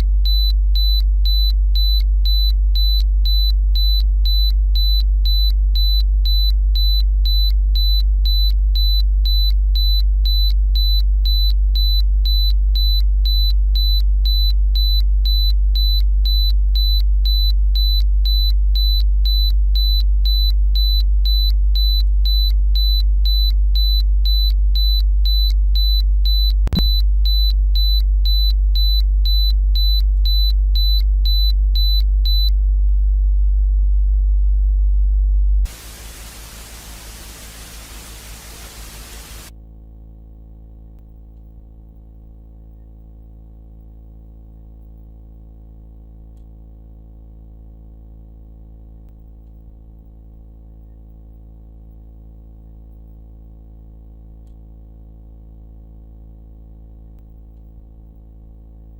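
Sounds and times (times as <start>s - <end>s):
click: 54.4s - 54.6s, 57.5s - 57.7s.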